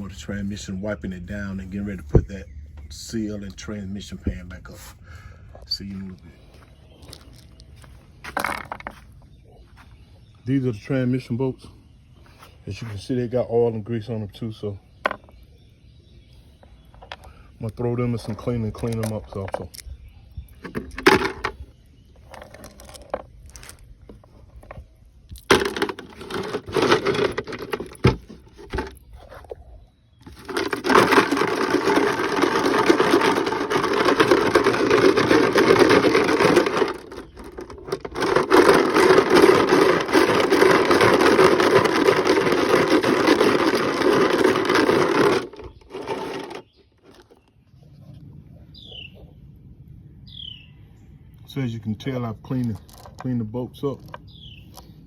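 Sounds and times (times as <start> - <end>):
scrubbing and rattling: 20.6 - 21.6, 22.2 - 47.5
knocks and scrapes of bolts: 25.4 - 29.6.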